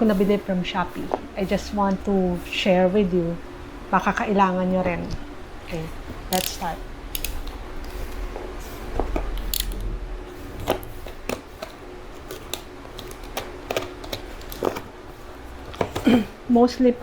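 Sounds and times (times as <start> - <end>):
scissors snipping: 6.3 - 7.4.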